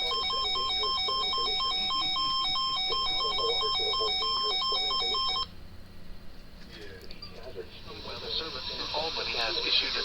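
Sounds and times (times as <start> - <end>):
two-pitch alternating beeps: 0.0 - 5.5.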